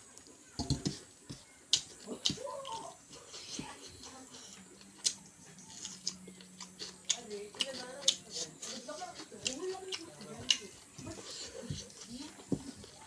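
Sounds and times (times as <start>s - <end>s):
person chewing with mouth clicks: 1.7s - 12.1s.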